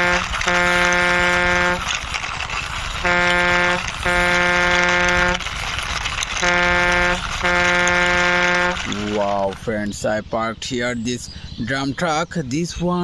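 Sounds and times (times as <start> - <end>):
truck horn honking: 0.0 - 2.0, 3.0 - 5.5, 6.4 - 9.1
steady noisy background: 0.0 - 10.1.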